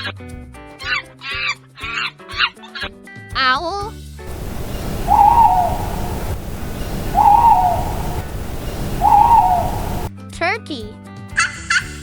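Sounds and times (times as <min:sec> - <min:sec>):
owl hooting: 0:04.3 - 0:10.1
steady background hiss: 0:04.3 - 0:10.1.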